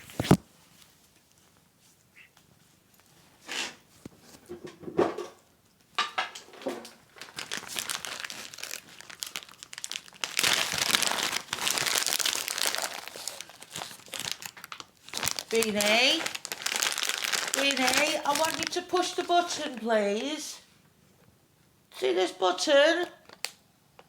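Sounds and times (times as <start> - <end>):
treat packet crinkling: 6.9 - 20.5, 23.1 - 24.0.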